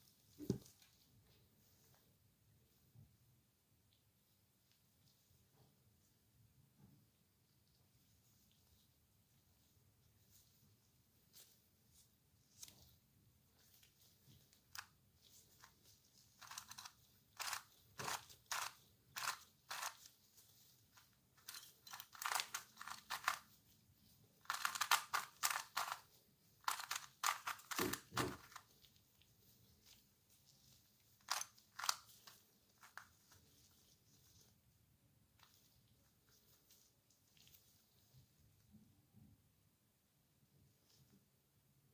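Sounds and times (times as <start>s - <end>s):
plastic puzzle clicking: 24.5s - 26.0s, 26.7s - 28.6s.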